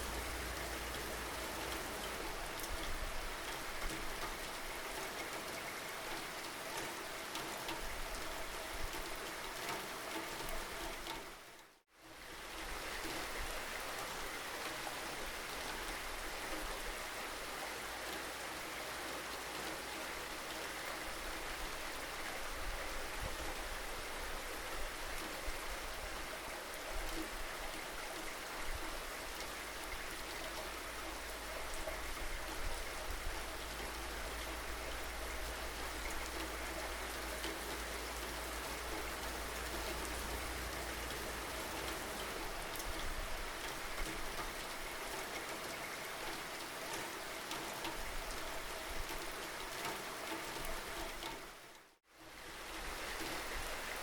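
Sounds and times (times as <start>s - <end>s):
steady rain falling: 0.0s - 54.0s
rain drop ticks: 35.4s - 48.4s.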